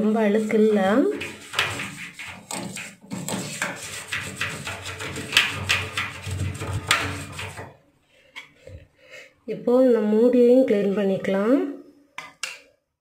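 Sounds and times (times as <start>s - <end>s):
scrubbing by hand: 0.3s - 7.7s.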